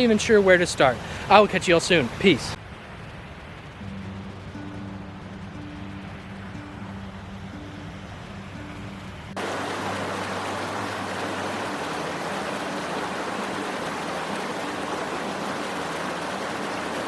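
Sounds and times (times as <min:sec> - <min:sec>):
quiet music: 0:03.8 - 0:17.0
fast-flowing creek rushing: 0:09.4 - 0:17.0.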